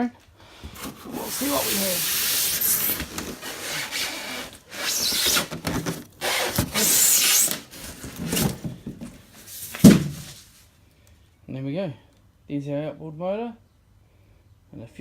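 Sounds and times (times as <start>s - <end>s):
foam scraping against cardboard: 0.8s - 10.6s.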